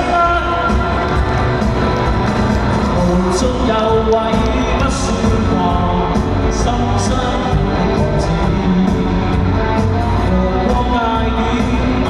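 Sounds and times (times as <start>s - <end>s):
pop-rock song with drums and guitar: 0.0s - 12.0s.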